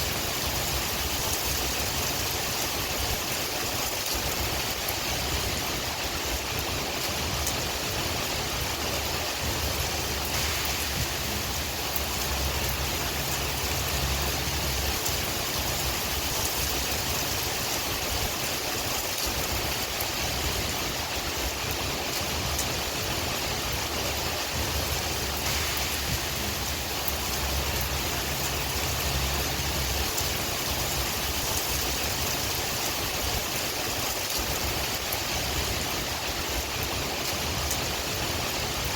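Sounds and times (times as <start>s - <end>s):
steady rainfall: 0.0s - 38.9s
wind rumble: 0.0s - 38.9s.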